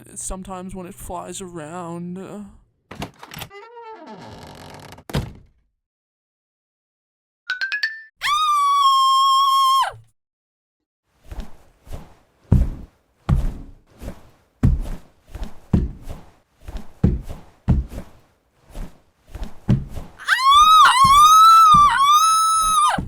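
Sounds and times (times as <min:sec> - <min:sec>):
loud high wavering cry: 0:08.2 - 0:10.0, 0:20.2 - 0:23.0
heavy irregular thuds: 0:12.5 - 0:13.7, 0:15.7 - 0:18.1.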